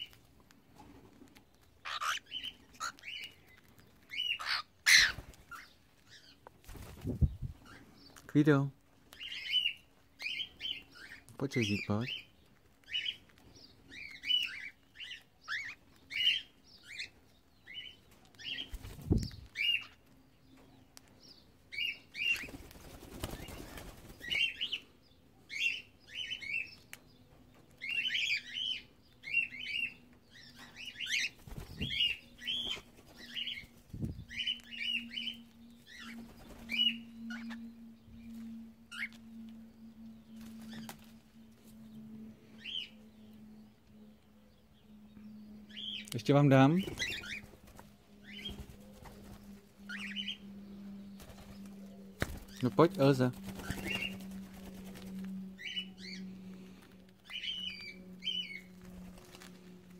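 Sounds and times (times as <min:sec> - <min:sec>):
cockatiels chirping: 0:01.8 - 0:06.4, 0:13.9 - 0:18.7, 0:19.5 - 0:20.0, 0:27.8 - 0:33.7, 0:34.3 - 0:37.6, 0:46.7 - 0:47.5, 0:57.2 - 0:58.7
wing flapping: 0:06.6 - 0:07.7, 0:18.6 - 0:19.5, 0:22.3 - 0:24.6, 0:31.2 - 0:34.3, 0:46.8 - 0:50.0, 0:51.2 - 0:55.8, 0:58.6 - 0:59.9.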